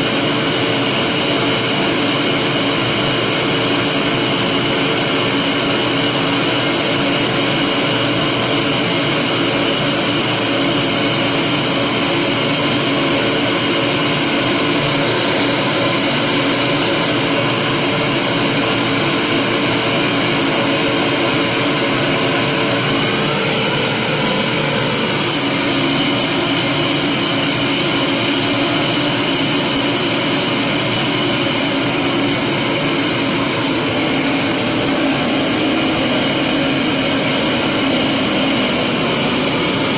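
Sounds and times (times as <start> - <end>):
vacuum cleaner running: 0.0 - 39.9.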